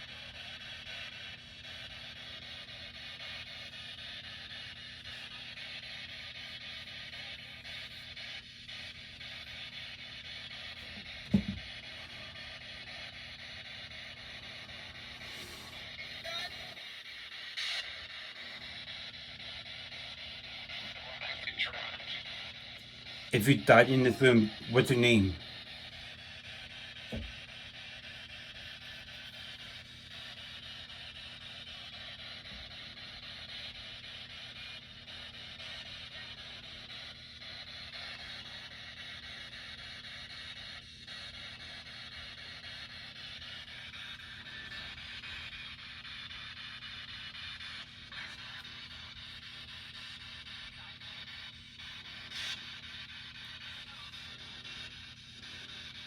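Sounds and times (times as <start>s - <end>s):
soft thump: 11.3s - 11.6s
dull thud: 11.3s - 11.7s.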